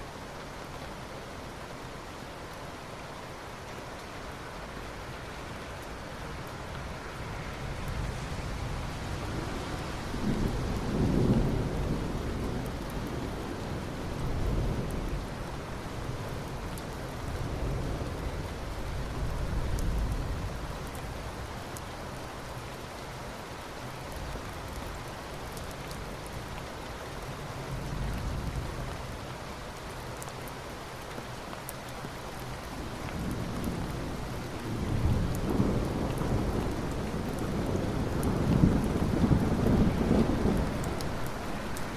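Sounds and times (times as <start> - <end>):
steady rain falling: 0.0 - 41.9
low rolling thunder: 7.8 - 15.3, 33.2 - 41.9.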